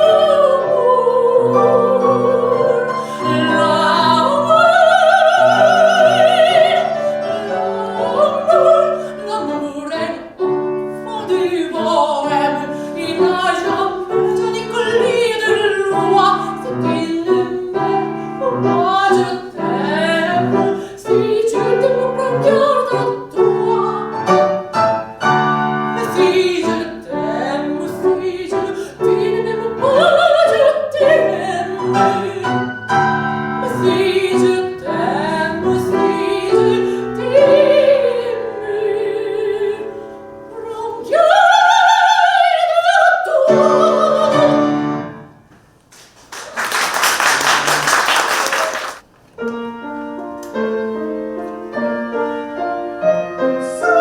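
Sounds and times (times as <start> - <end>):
soprano singing: 0.0 - 45.2, 49.8 - 54.0
piano: 0.0 - 54.0
applause: 46.0 - 49.0.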